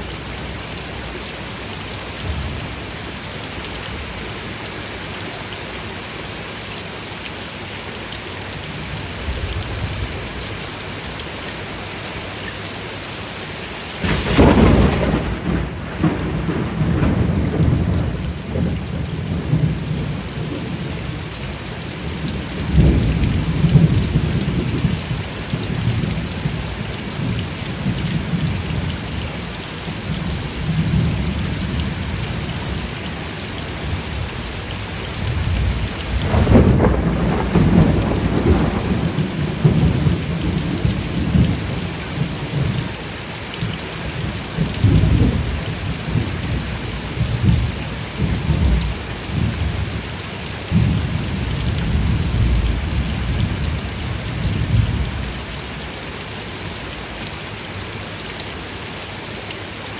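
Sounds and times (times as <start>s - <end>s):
heavy rain: 0.0s - 59.9s
thunder rumbling: 14.0s - 21.1s, 22.3s - 26.6s, 35.2s - 42.8s, 44.2s - 50.0s, 50.7s - 55.4s.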